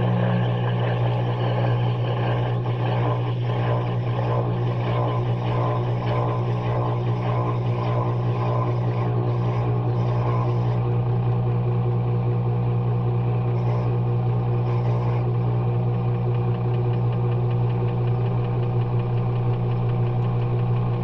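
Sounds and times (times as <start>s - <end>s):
washing machine running: 0.0s - 21.0s.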